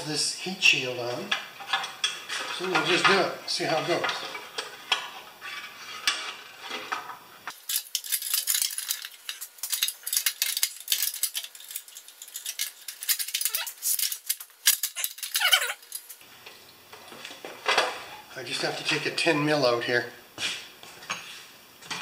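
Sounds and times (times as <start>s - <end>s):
metal tools clinking and rattling: 7.5s - 16.2s.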